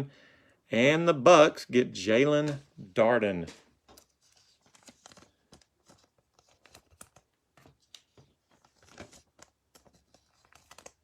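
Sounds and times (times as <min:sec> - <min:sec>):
card packaging rustling: 0:02.4 - 0:11.0.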